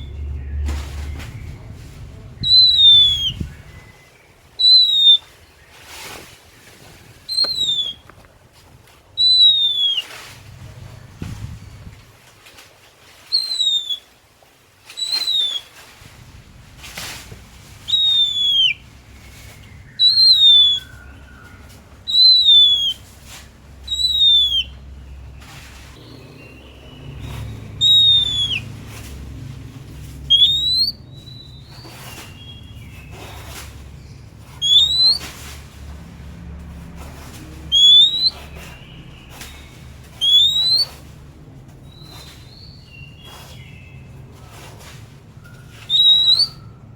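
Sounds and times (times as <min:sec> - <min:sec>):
bird whistled notes: 0:02.4 - 0:05.4, 0:07.3 - 0:08.0, 0:09.2 - 0:10.2, 0:13.3 - 0:14.1, 0:15.0 - 0:15.8, 0:17.8 - 0:23.1, 0:23.8 - 0:25.2, 0:26.0 - 0:28.8, 0:30.2 - 0:33.6, 0:34.6 - 0:35.5, 0:37.7 - 0:41.0, 0:45.4 - 0:46.9
soft short bird notes: 0:07.3 - 0:08.0.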